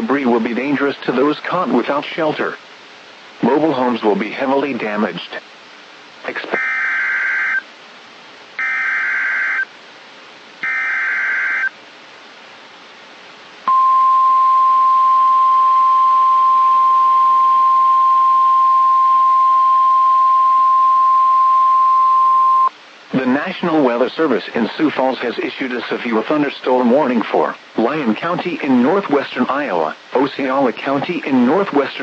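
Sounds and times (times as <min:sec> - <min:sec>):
radio hiss: 0:00.0 - 0:07.7, 0:22.2 - 0:32.0
steady warning alarm tone: 0:06.6 - 0:07.6, 0:08.6 - 0:09.7, 0:10.6 - 0:11.7
digital data tone bursts: 0:10.6 - 0:11.7.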